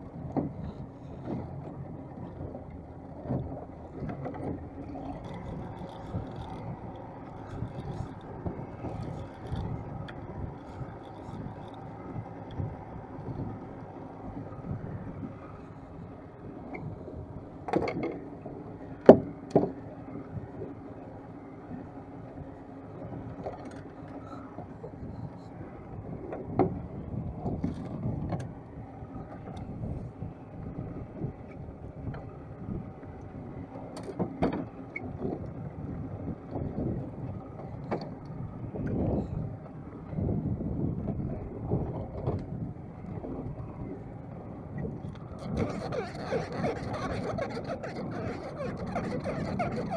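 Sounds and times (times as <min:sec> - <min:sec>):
boat engine running: 0:00.0 - 0:33.8, 0:42.9 - 0:49.9
rumble of water: 0:00.0 - 0:49.9.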